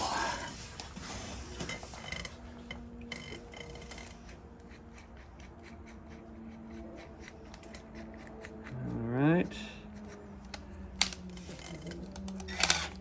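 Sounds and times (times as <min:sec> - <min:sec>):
tools clicking: 0:10.0 - 0:13.0.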